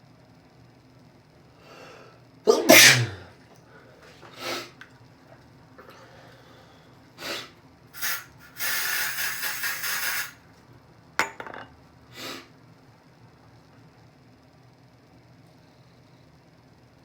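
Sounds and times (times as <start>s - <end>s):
loud hissing rustling noise: 2.5s - 3.2s, 7.2s - 10.4s
person sneezing: 2.5s - 3.3s, 4.3s - 4.8s
person breathing and sniffing: 3.8s - 4.8s.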